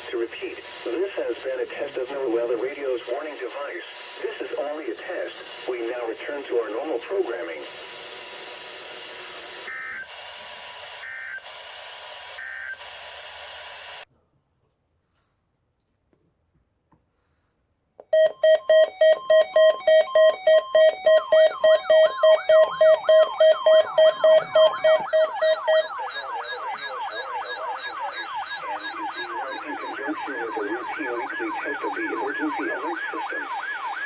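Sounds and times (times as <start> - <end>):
pulsing alarm beep: 18.1 - 34.0
falling siren whoop: 19.4 - 29.6.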